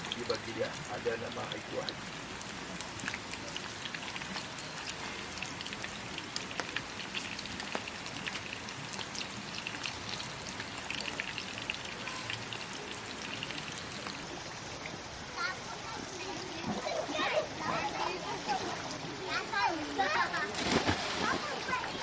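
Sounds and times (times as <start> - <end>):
rain drops ticking on surface: 0.0 - 16.6.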